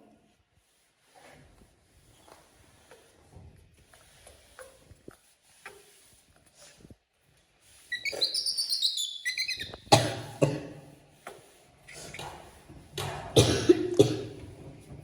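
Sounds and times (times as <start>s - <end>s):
baby monkey squeaky calls: 7.9s - 9.9s
monkey harsh cough-like bursts: 9.6s - 10.8s, 13.4s - 14.4s.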